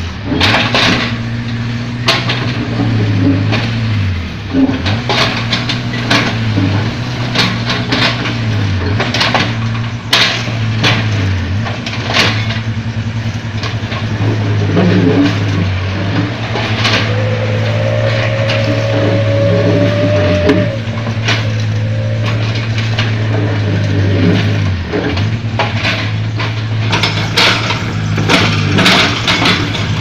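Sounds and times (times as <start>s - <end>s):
excavator diesel engine running: 0.0s - 30.0s
bucket knocking and scraping road: 2.0s - 30.0s
thin whine: 16.1s - 24.6s.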